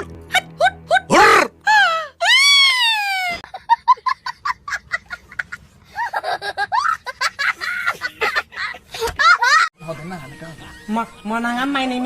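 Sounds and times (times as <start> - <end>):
high-pitched giggling laughter: 3.3 - 9.7.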